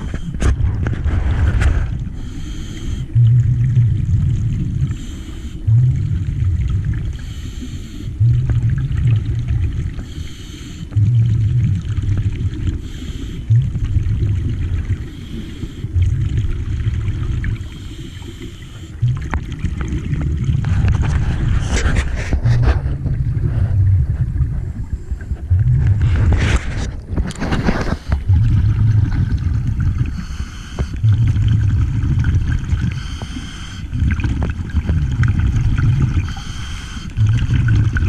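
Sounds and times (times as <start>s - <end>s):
diver breathing through regulator: 0.0s - 3.9s, 4.8s - 6.4s, 7.0s - 8.8s, 9.9s - 11.2s, 12.6s - 13.8s, 14.8s - 16.3s, 17.5s - 19.3s, 20.6s - 31.8s, 32.8s - 34.9s, 36.0s - 38.0s
bubbling exhale: 0.0s - 38.0s.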